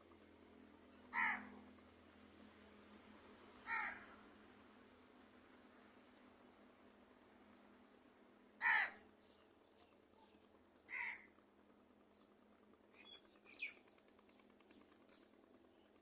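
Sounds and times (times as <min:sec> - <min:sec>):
crow cawing: 0:01.1 - 0:01.5, 0:03.6 - 0:04.2, 0:08.6 - 0:09.0, 0:10.9 - 0:11.3.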